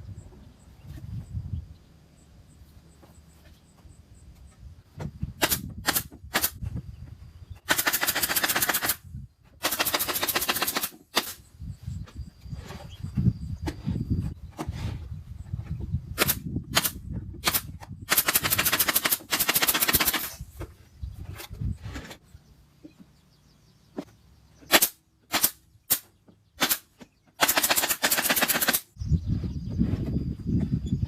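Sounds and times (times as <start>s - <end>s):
sharp cracks: 5.4s - 6.6s, 7.7s - 9.0s, 9.6s - 11.4s, 16.2s - 20.4s, 24.7s - 28.9s.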